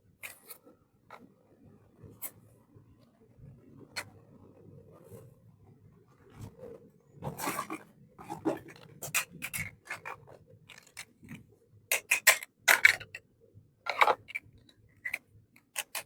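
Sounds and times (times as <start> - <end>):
toy pieces clicking and tapping: 11.9 - 13.2, 15.0 - 16.0.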